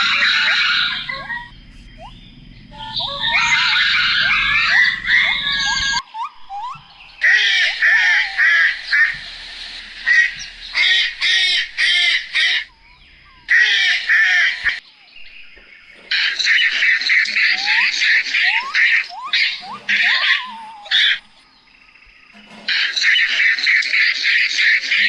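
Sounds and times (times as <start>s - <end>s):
birds harsh calls: 0.0s - 25.0s.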